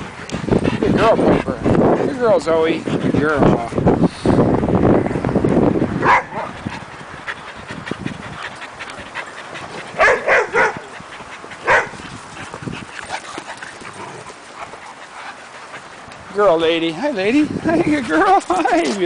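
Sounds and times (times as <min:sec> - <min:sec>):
dogs barking: 0:06.0 - 0:06.6, 0:09.8 - 0:12.0.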